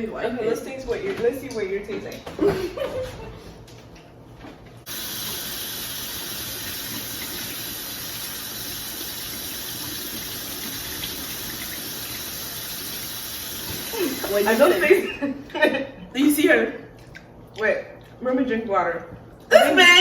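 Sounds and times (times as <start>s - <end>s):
water running from a tap: 4.9s - 15.0s.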